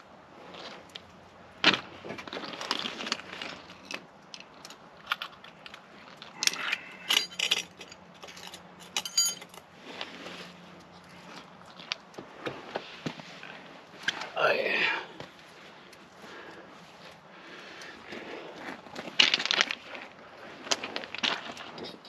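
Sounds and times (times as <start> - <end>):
metal tools clinking: 6.4 - 9.7, 21.2 - 22.0.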